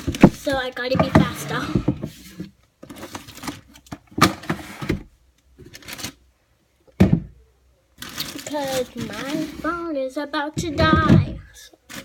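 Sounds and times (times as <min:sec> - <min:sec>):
toys being handled: 0:08.0 - 0:12.0.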